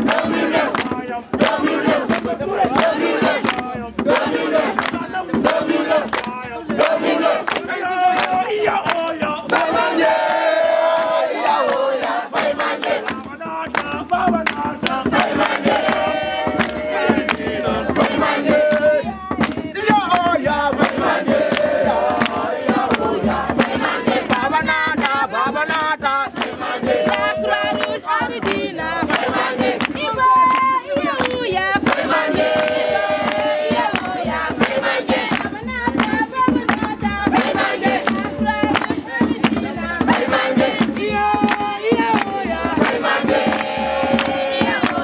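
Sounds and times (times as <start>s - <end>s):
group singing and chanting: 0.0s - 45.0s
sharp rhythmic beats: 0.0s - 45.0s.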